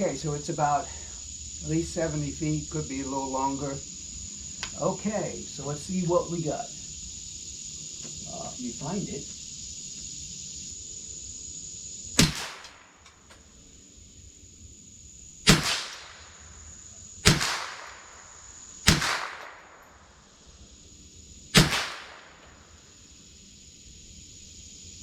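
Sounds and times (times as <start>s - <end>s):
rifle shots: 12.2s - 13.1s, 15.5s - 16.4s, 17.2s - 20.0s, 21.6s - 22.6s.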